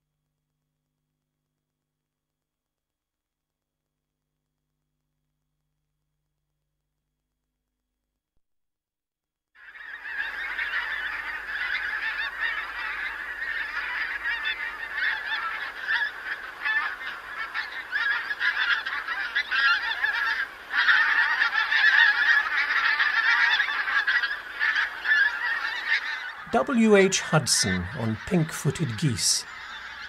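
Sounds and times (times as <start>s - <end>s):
flock of geese honking: 9.6s - 30.0s.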